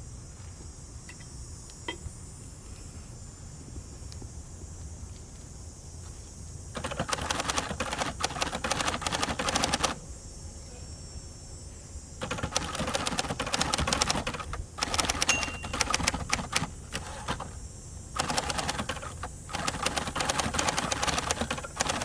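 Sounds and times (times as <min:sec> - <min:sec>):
manual typewriter keystrokes: 0:06.8 - 0:10.0, 0:12.2 - 0:17.5, 0:18.2 - 0:22.0.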